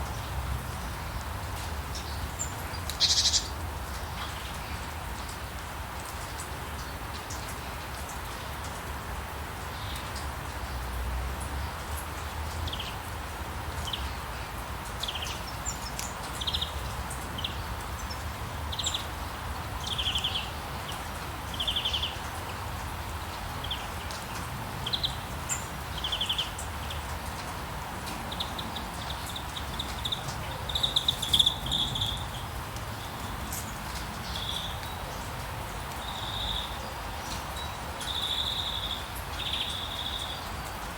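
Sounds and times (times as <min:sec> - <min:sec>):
steady rain hiss: 0:00.0 - 0:40.9
birds chirping and trilling: 0:02.0 - 0:03.6, 0:28.0 - 0:33.3.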